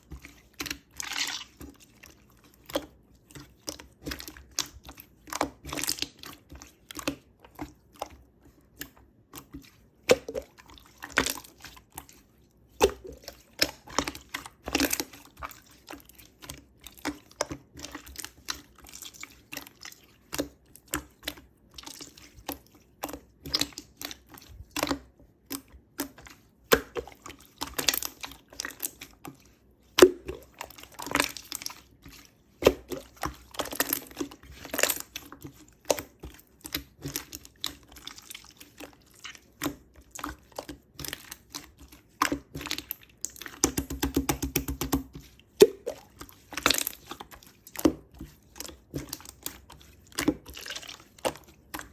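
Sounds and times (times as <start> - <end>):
slime squished by hand: 0.7 - 1.7.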